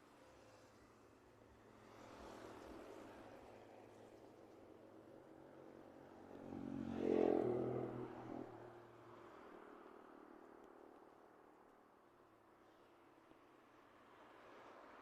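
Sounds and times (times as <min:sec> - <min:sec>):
motor vehicle passing by: 0:06.2 - 0:09.7.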